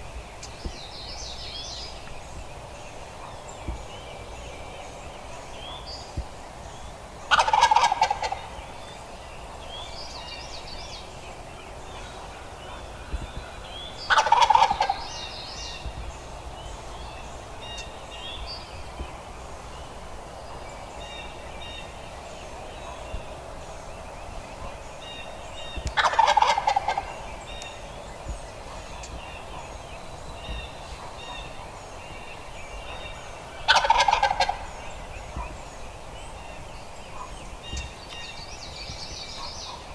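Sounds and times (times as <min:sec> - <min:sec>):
turkey gobbling: 0:07.3 - 0:08.6, 0:14.1 - 0:15.3, 0:25.9 - 0:27.4, 0:33.6 - 0:35.5.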